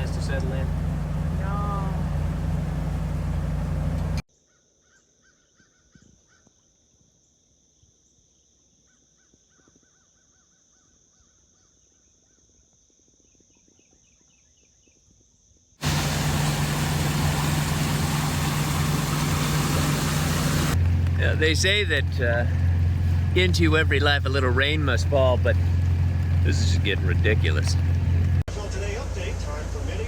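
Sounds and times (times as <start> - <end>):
boat engine humming: 0.0 - 4.2, 15.8 - 30.0.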